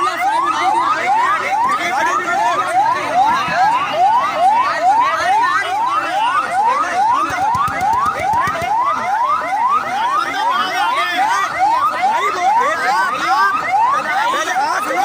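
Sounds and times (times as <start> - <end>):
siren in fast yelp: 0.0 - 15.0.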